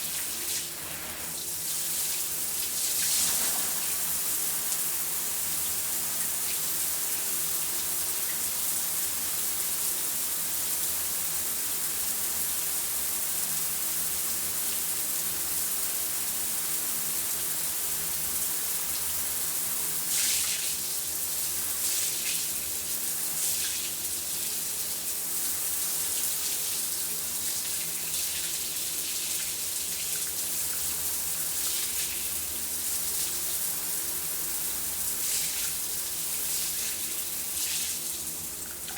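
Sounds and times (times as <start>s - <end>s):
shower water spray hissing: 0.0s - 5.6s, 33.0s - 38.9s.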